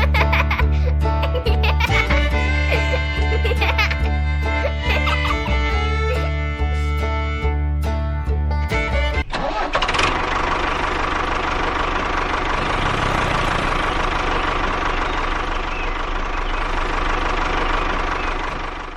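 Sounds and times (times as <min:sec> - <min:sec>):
small motor whining: 0:12.5 - 0:16.1.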